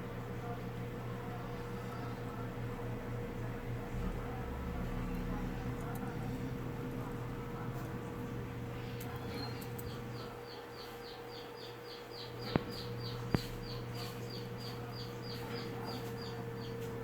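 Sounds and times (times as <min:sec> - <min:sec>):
steady low hum: 0:00.0 - 0:17.0
small animal chirping: 0:09.2 - 0:16.9.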